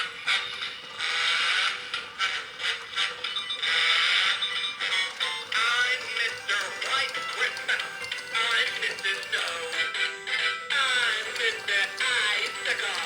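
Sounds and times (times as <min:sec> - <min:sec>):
toy song through small speaker: 0:00.0 - 0:13.0.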